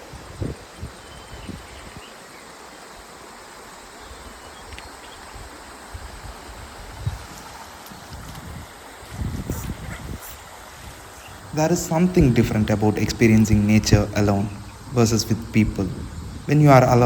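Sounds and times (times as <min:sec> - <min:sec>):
river stream flowing: 0:02.1 - 0:17.0
low bumps: 0:11.3 - 0:17.0.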